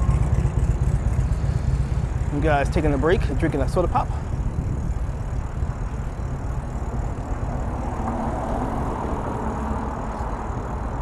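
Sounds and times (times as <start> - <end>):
car engine and tyre noise: 0.0 - 11.0.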